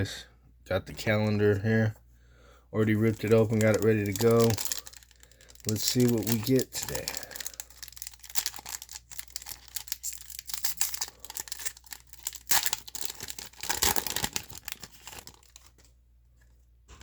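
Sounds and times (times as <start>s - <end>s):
wrapper crinkling and tearing: 3.0s - 15.9s.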